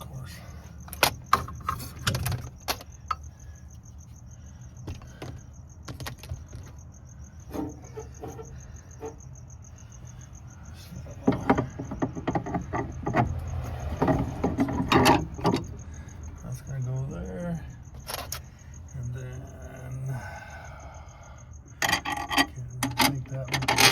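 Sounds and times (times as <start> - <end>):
cricket trilling: 0.0 - 23.9
clicks and knocks of hand work: 11.2 - 15.7, 21.8 - 23.9.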